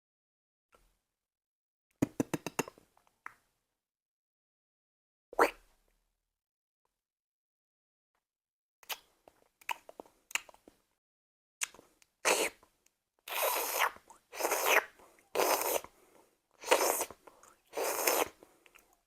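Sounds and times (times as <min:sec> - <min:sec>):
beatboxing clicks and pops: 0:02.0 - 0:02.8
breathy hissing bursts: 0:16.6 - 0:18.4.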